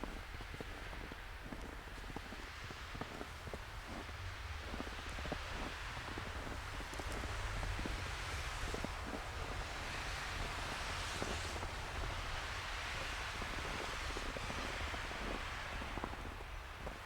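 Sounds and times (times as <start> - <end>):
gusting snowstorm wind: 0.0 - 17.0.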